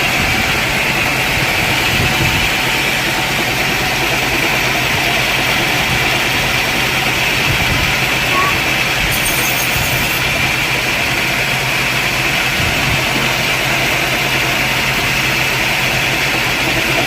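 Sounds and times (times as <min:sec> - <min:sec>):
sawmill machinery running: 0:00.0 - 0:17.0.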